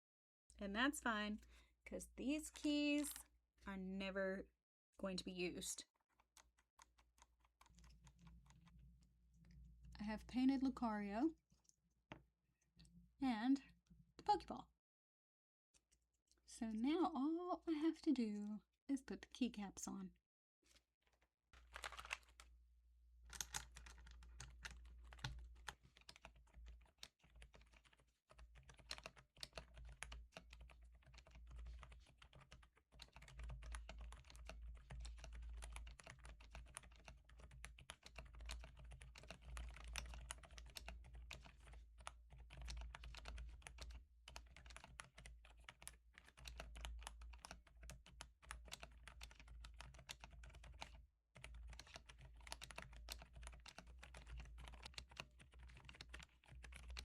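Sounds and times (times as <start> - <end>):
soft keyboard typing: 6.0 - 11.8, 21.6 - 22.5, 23.3 - 57.0.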